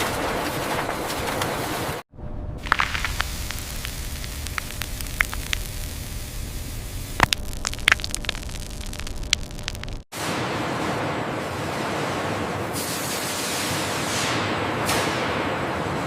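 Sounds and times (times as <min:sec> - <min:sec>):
crackles and clicks: 0:02.5 - 0:10.1
even hiss: 0:02.6 - 0:07.9.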